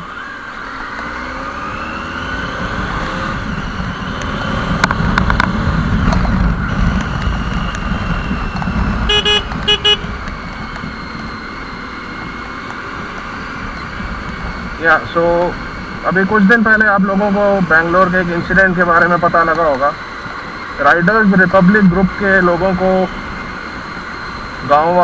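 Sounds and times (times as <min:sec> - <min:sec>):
motorcycle engine running: 0:00.0 - 0:25.0
wind rumble on microphone: 0:02.4 - 0:11.6
vehicle horn tooting: 0:09.0 - 0:10.2.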